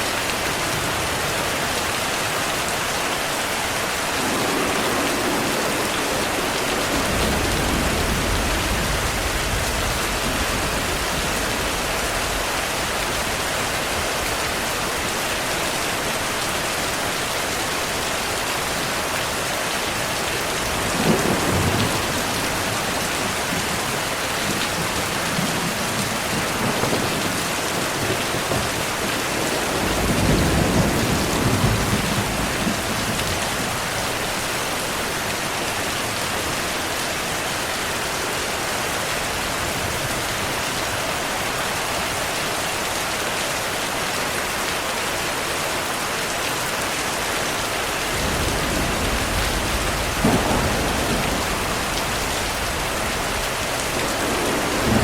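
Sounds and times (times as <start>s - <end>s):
steady rain: 0.0s - 55.0s
thunder rumbling: 3.9s - 14.4s, 20.6s - 34.4s, 48.0s - 55.0s.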